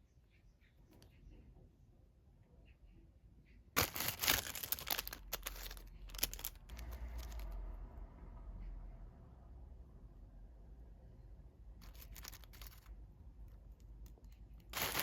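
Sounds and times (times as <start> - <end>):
packaging tearing and crinkling: 3.8 - 7.5, 11.8 - 12.9, 14.6 - 15.0.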